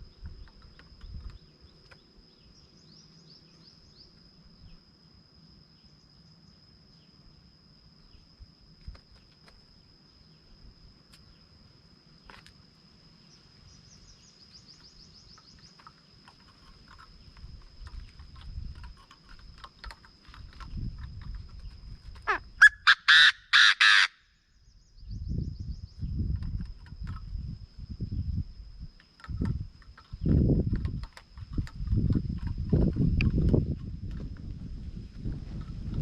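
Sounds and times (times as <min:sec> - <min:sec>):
high insect tone: 0:00.0 - 0:36.0
bird calling harsh notes: 0:22.2 - 0:24.4.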